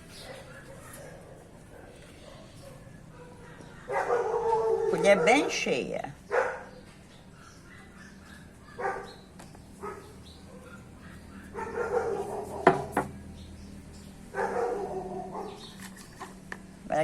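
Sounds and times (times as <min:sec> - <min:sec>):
dog barking: 0:00.2 - 0:09.2, 0:09.8 - 0:12.9, 0:14.3 - 0:15.6
sharp knocks: 0:12.6 - 0:13.2.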